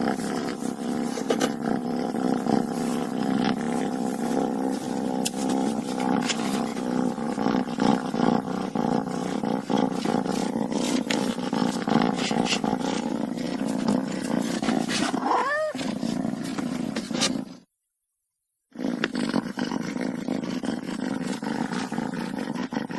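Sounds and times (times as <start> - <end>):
cat growling: 0.0 - 17.6, 18.8 - 22.9
cat yowling: 15.2 - 15.8.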